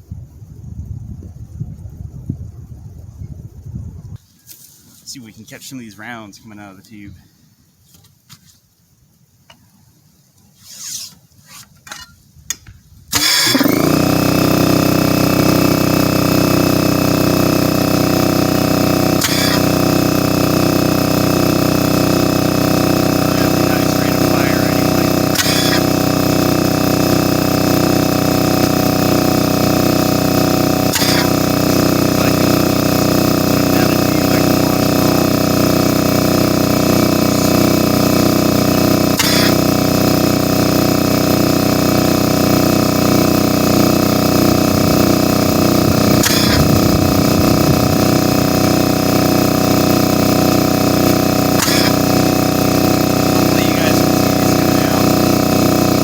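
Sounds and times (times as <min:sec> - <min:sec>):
air compressor droning: 0:10.6 - 0:12.2, 0:13.0 - 0:56.0
airsoft mortar firing sharp pops: 0:30.9 - 0:31.4, 0:51.6 - 0:52.0.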